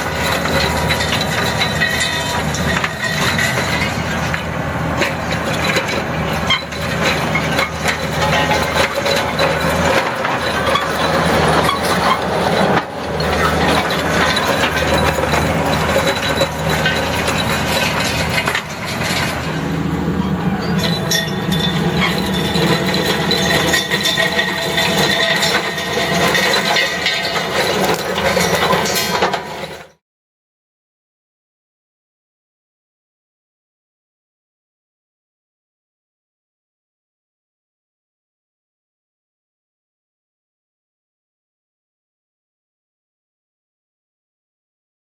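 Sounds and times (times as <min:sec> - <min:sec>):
engine running under load: 0:00.0 - 0:30.0.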